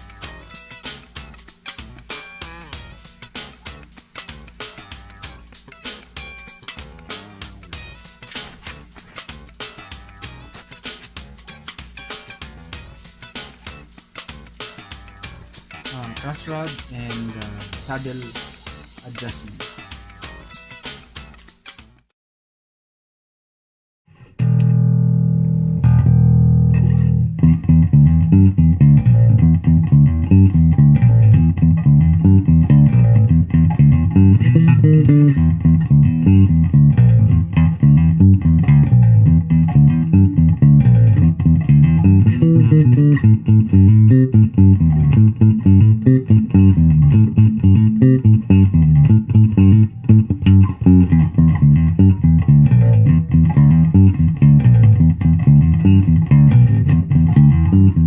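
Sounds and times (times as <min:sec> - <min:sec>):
electric bass notes plucked: 0:01.2 - 0:05.4, 0:06.2 - 0:08.1, 0:12.4 - 0:13.1, 0:24.1 - 0:58.0.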